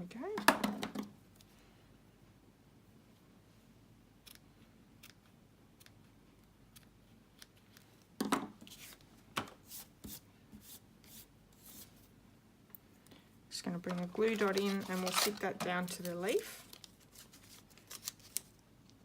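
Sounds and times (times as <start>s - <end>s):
paper rustling: 13.9s - 18.6s.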